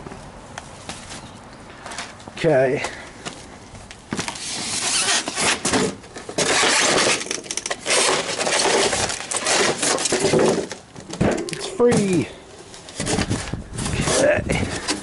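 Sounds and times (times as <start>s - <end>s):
packing material crackling and tearing: 4.2s - 10.8s.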